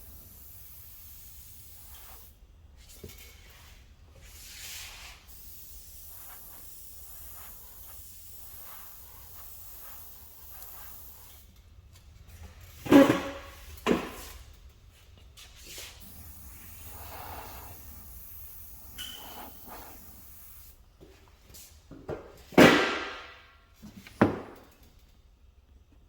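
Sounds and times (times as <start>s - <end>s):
sharp knocks and clunks: 24.2s - 24.6s.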